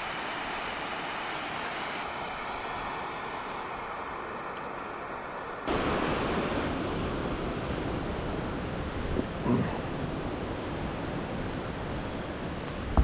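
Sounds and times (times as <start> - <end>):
waterfall roaring: 0.0 - 8.0.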